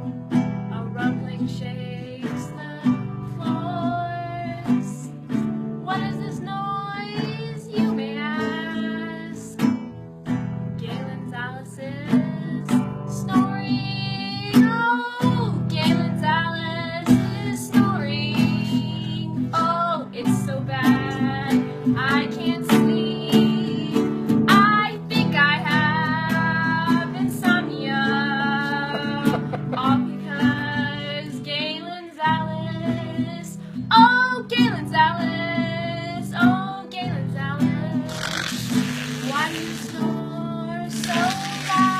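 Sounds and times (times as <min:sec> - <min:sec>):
strummed acoustic guitar: 0:00.0 - 0:41.9
person singing: 0:24.9 - 0:33.4, 0:36.4 - 0:41.9.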